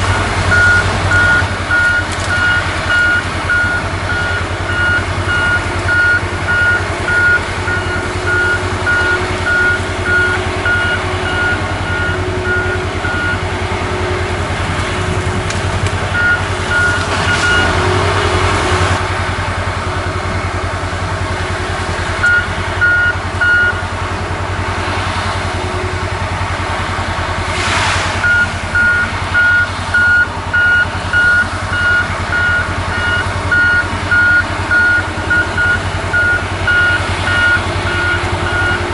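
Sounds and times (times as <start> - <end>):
reversing alarm beeping: 0.0 - 14.2, 16.1 - 17.8, 22.2 - 23.8, 28.2 - 38.9
engine surges: 0.0 - 38.9
heavy diesel machinery running: 0.0 - 38.9.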